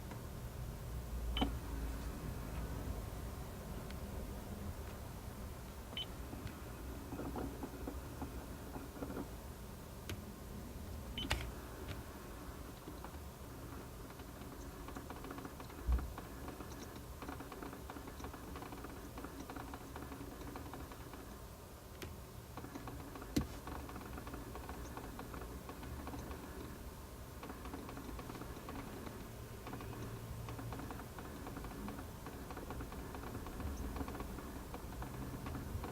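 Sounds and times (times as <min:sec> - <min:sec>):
rapid clicking behind dashboard: 0:12.8 - 0:21.3, 0:27.4 - 0:35.9.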